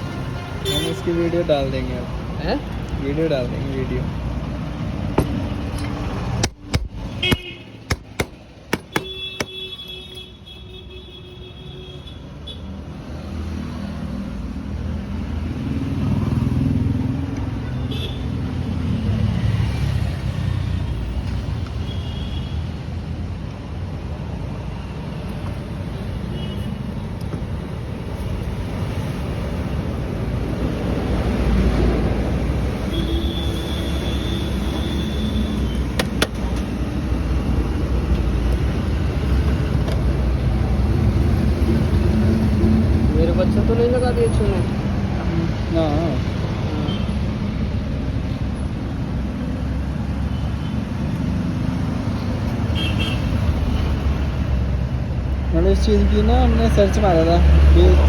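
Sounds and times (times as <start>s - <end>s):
motor vehicle engine rumbling: 2.6s - 9.8s.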